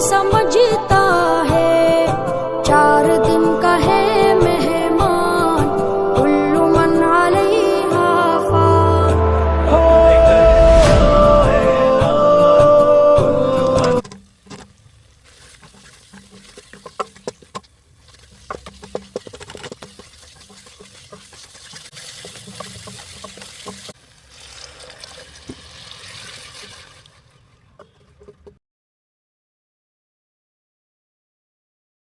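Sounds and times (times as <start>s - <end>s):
sung music: 0.1s - 14.0s
spoon stirring in a pot: 14.0s - 24.0s.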